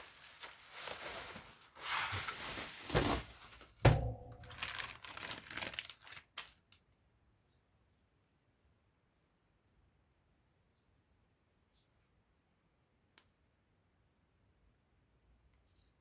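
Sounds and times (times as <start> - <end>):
packaging rustling and crinkling: 0.0 - 6.8
object set down with ringing thunk: 3.9 - 4.4.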